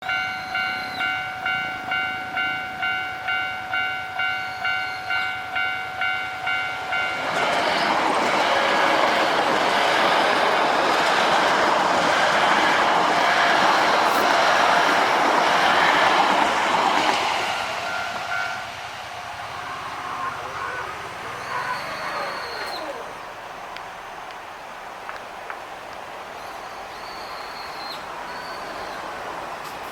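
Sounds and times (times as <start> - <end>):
level crossing alarm dinging: 0.0 - 7.9
electric train passing: 0.0 - 29.9.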